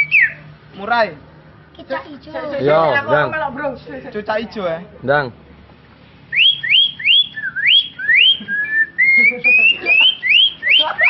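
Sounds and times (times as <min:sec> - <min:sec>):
child whistling birdsong imitation: 0:00.0 - 0:00.5, 0:06.3 - 0:10.8.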